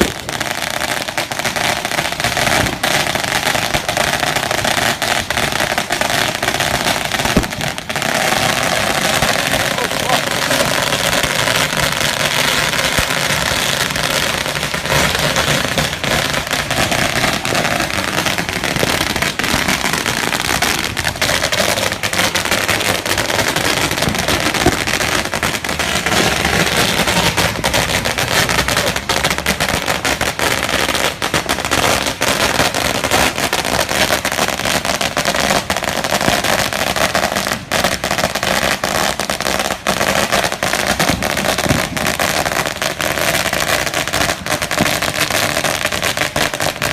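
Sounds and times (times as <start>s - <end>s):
firecrackers crackling: 0.0s - 46.9s.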